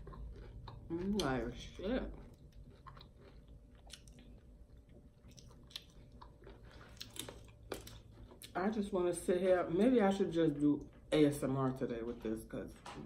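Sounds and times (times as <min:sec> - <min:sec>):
chewing fried chicken: 0:00.0 - 0:08.8.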